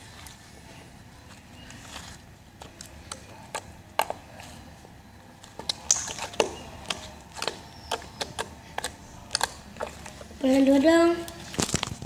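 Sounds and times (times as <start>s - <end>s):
slime clicking and popping: 7.4s - 9.9s.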